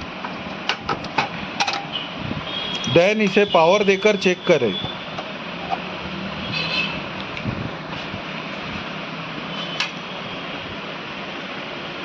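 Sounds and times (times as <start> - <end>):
computer cooling fans running: 0.0 - 12.0.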